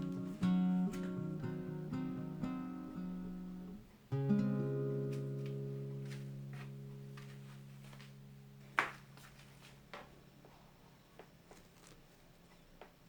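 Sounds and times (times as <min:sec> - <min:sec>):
acoustic guitar plucking: 0:00.0 - 0:09.4.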